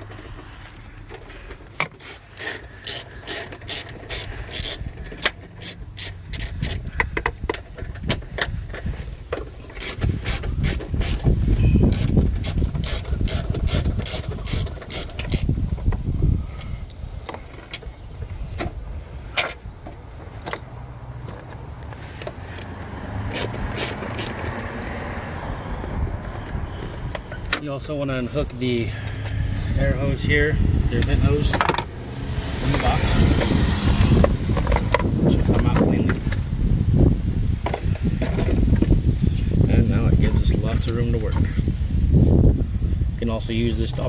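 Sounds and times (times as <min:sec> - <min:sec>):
low rumbling of handled parts: 0:00.0 - 0:44.0
ratchet wrench clicking: 0:01.8 - 0:06.9, 0:09.7 - 0:11.2, 0:11.9 - 0:15.6, 0:23.3 - 0:24.8.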